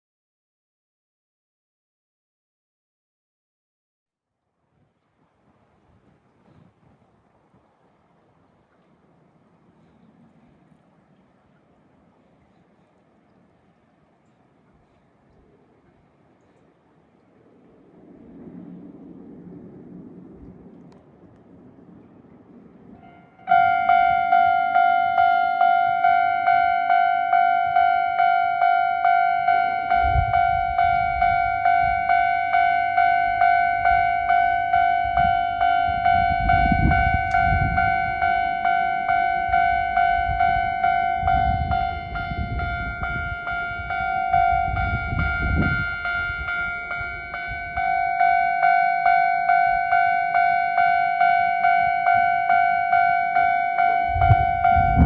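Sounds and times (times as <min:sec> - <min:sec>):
low rumbling: 0:05.4 - 0:50.7, 0:53.2 - 0:55.0
level crossing alarm clanging: 0:23.0 - 0:55.0.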